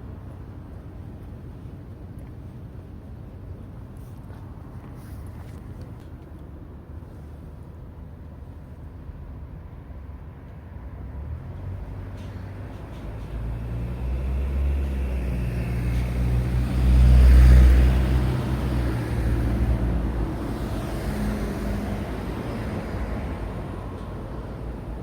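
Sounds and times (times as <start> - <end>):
road traffic noise: 0.0 - 25.0
heavy vehicle engine passing: 11.9 - 24.0.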